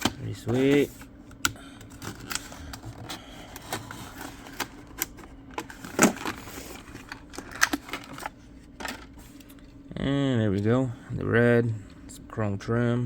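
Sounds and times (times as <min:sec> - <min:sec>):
plastic packaging crackling: 0:02.0 - 0:09.1.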